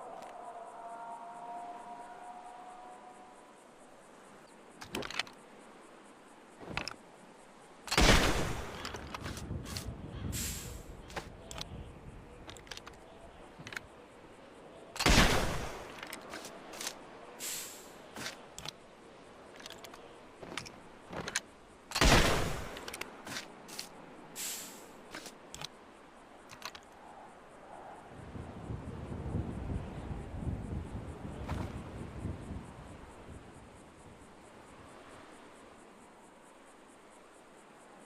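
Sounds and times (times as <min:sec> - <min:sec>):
musket firing: 0:07.9 - 0:08.8, 0:15.0 - 0:15.9, 0:21.9 - 0:22.8.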